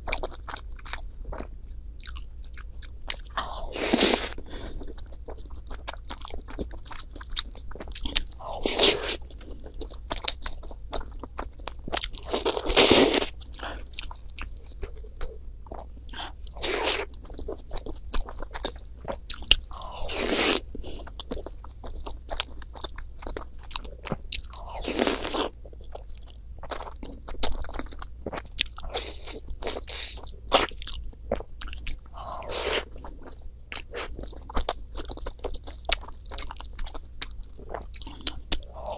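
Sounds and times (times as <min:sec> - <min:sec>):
close chewing and biting: 0:00.0 - 0:38.9
louder eating bursts: 0:12.2 - 0:13.4.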